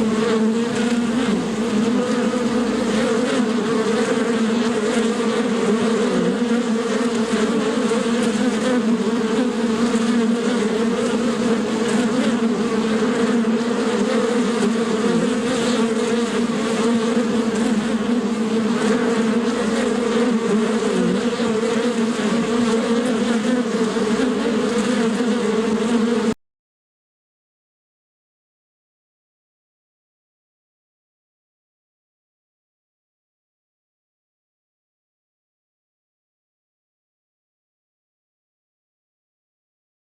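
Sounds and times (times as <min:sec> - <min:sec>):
bee buzzing in flight: 0:00.0 - 0:26.4.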